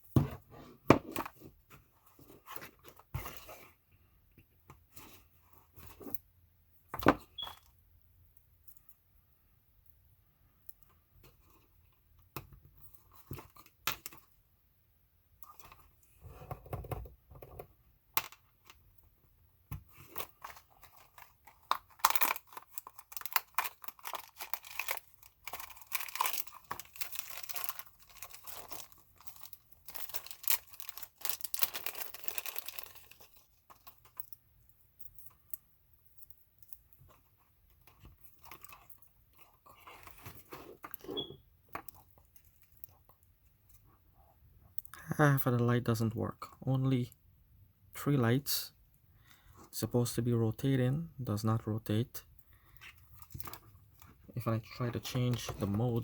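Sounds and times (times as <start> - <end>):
crinkling and rustling: 15.4 - 44.8, 52.7 - 56.0.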